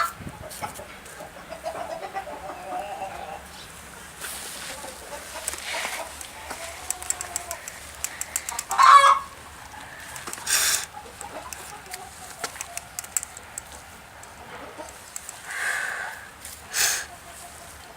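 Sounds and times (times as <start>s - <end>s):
animal squawking: 5.6s - 11.6s, 15.4s - 17.2s.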